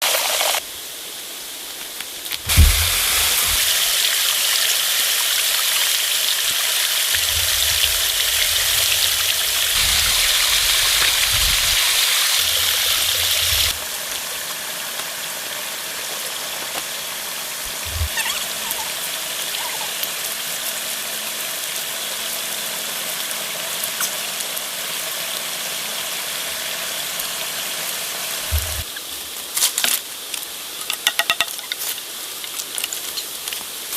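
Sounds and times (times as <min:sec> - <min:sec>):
hiss of running water: 0:00.0 - 0:30.8
low rumbles and thumps: 0:02.5 - 0:03.8, 0:07.2 - 0:13.8, 0:17.7 - 0:18.2, 0:28.4 - 0:28.9.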